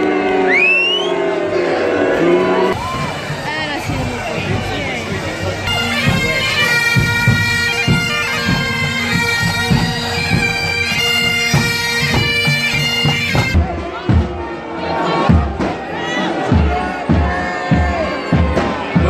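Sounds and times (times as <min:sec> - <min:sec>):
bagpipes playing over drones: 0:00.0 - 0:13.6
drumbeats: 0:02.7 - 0:19.0.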